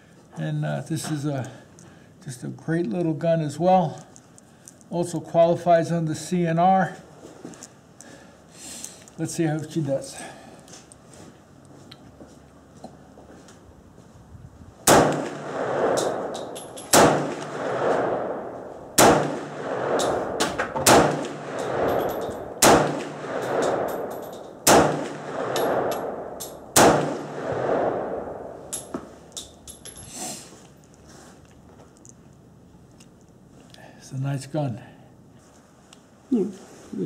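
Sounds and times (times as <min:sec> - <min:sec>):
pistol shots with echo: 0:14.8 - 0:28.9.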